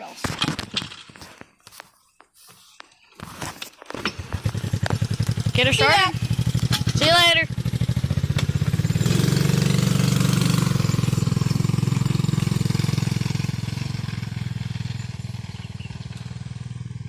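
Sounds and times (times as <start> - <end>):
small vehicle engine puttering: 3.5 - 17.0.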